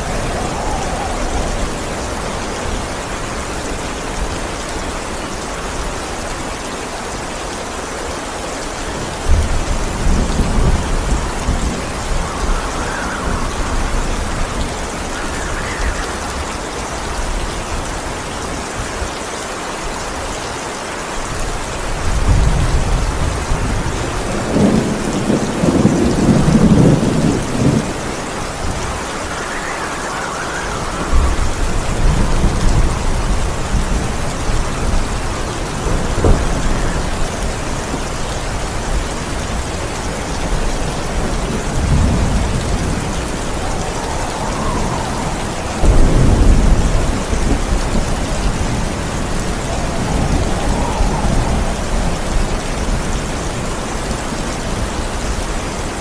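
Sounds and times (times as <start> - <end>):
rolling thunder: 0.0 - 5.9, 8.9 - 19.0, 21.3 - 55.6
heavy rain: 0.0 - 56.0.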